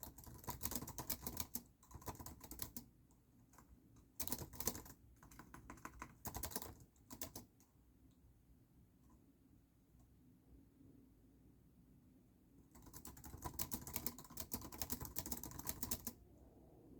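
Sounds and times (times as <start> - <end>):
typing on a keyboard: 0.0 - 7.7, 12.7 - 16.2.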